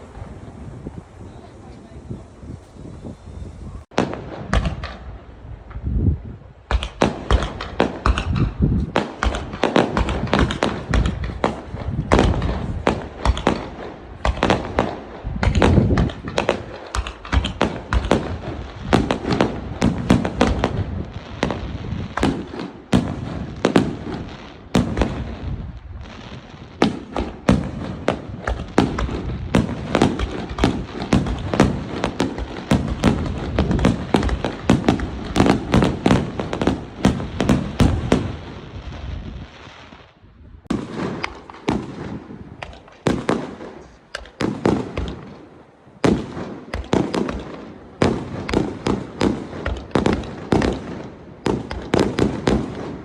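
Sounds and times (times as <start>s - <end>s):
fireworks bangs: 0.0s - 53.0s.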